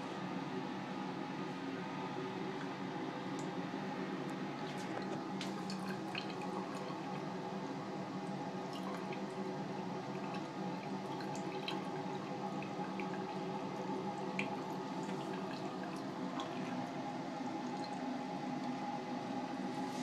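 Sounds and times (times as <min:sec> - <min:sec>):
water drips and splashes: 0:04.3 - 0:07.3, 0:08.2 - 0:18.7.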